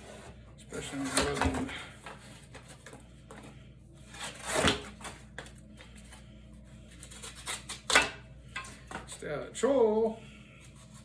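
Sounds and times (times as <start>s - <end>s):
knife cutting cardboard: 4.1s - 5.2s.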